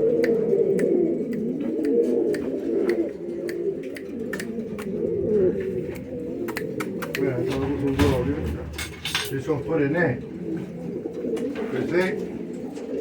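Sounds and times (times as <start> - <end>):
pigeons cooing: 0.0 - 13.0
faint clicks: 0.2 - 5.0, 5.9 - 7.3.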